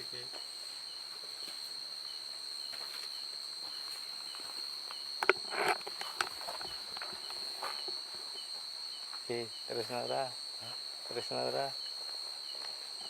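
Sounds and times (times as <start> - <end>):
crickets chirping: 0.0 - 13.0
sharp clicks: 5.2 - 7.4.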